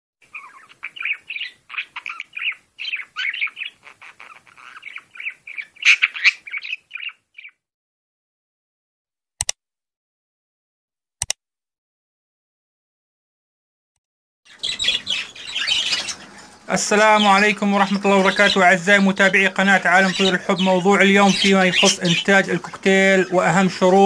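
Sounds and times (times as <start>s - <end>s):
cockatiels chattering and squawking: 0.2s - 7.6s, 14.5s - 24.0s
sharp clicks: 11.2s - 11.4s.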